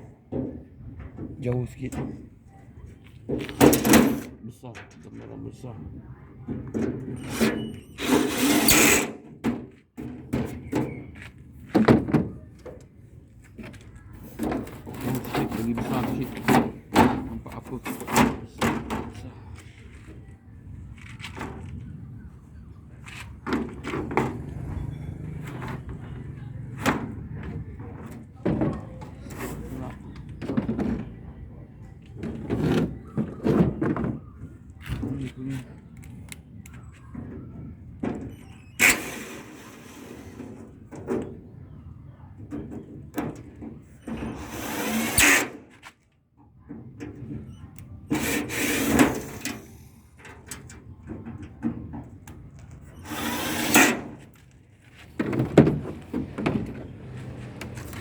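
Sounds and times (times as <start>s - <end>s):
scraping on lock mechanism: 0.3s - 5.1s, 6.6s - 9.7s, 13.8s - 19.2s, 35.7s - 41.5s, 42.4s - 46.0s, 46.7s - 58.0s.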